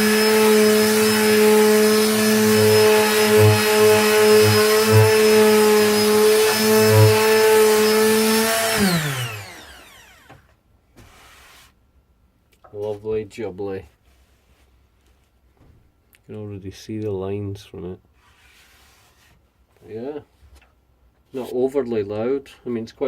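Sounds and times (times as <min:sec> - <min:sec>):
electric sander humming: 0:00.0 - 0:10.4.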